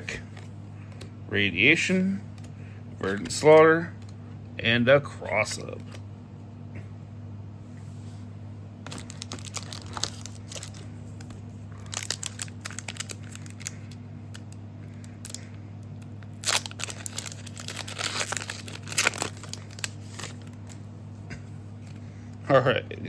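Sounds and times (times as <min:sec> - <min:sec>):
foil pack tearing and crinkling: 0:08.8 - 0:15.4, 0:16.2 - 0:20.8.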